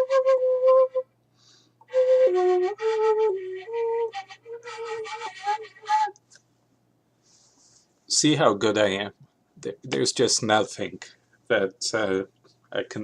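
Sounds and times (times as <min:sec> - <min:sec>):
shepherd's pipe playing held notes: 0:01.9 - 0:06.2.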